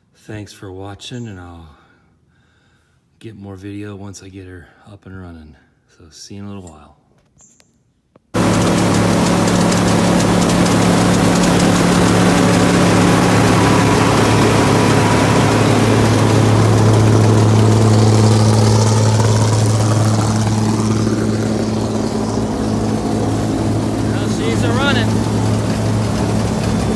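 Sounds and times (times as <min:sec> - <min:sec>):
combine engine humming: 0:08.4 - 0:26.9.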